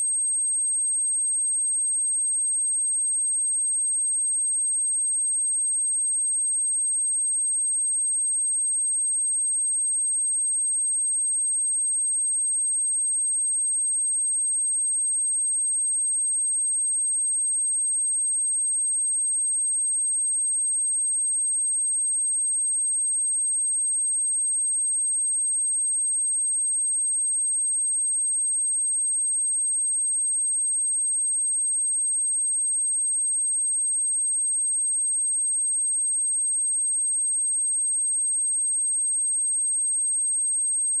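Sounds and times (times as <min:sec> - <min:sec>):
high-pitched sine test tone: 0:24.3 - 0:41.0.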